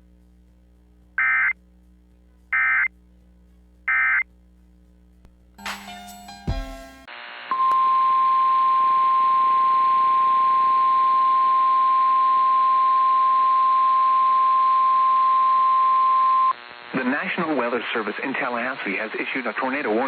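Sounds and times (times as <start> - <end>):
faint radio hiss: 0.0 - 5.6, 16.5 - 20.0.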